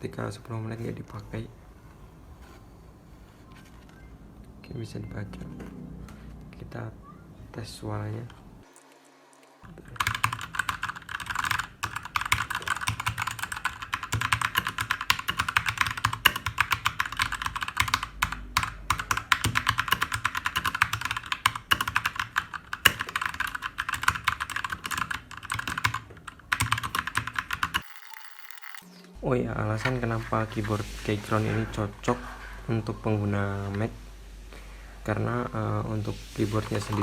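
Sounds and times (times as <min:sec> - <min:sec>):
mechanical keyboard typing: 0:09.7 - 0:28.8.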